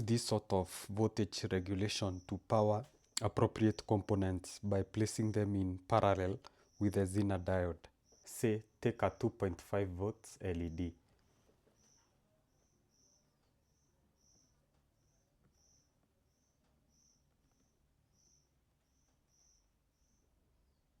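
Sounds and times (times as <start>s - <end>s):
cricket chirping: 11.8s - 20.8s.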